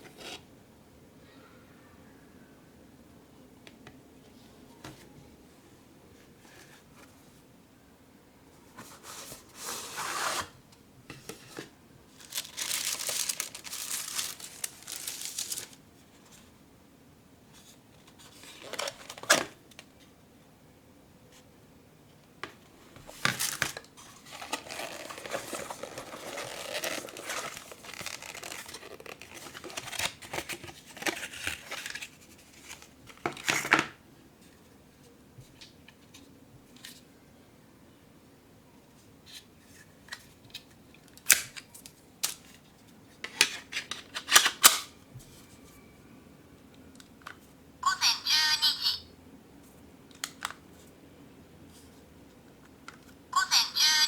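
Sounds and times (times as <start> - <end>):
packaging being torn and crinkled: 12.2 - 15.8, 23.4 - 33.5.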